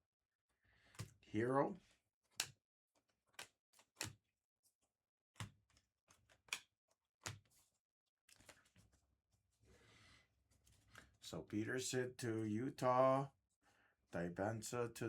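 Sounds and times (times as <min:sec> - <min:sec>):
cards clicking and tapping on table: 0:05.4 - 0:05.6, 0:06.5 - 0:07.6.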